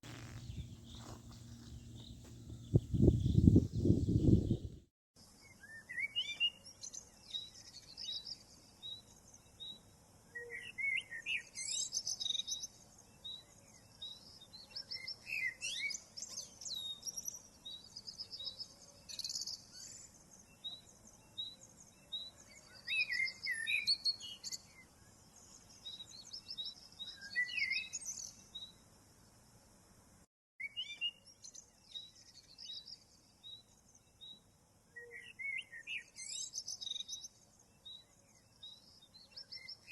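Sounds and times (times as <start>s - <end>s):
songbirds chirping: 0.1s - 4.8s.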